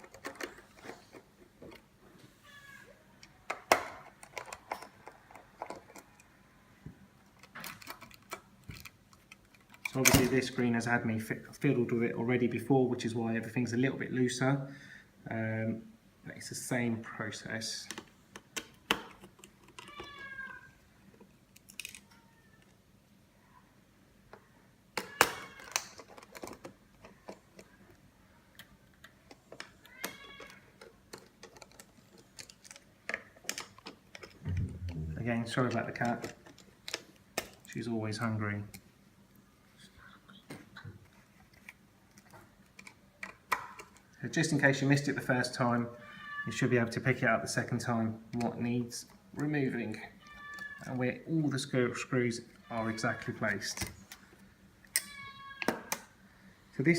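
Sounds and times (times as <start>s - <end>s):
small screws and plastic parts clicking: 0.0s - 1.8s, 3.2s - 6.4s, 7.2s - 10.0s, 17.9s - 22.8s, 25.0s - 34.6s, 35.6s - 37.7s, 41.4s - 44.2s, 49.4s - 51.1s
cat meowing: 19.9s - 20.7s, 46.0s - 46.5s, 50.2s - 50.9s.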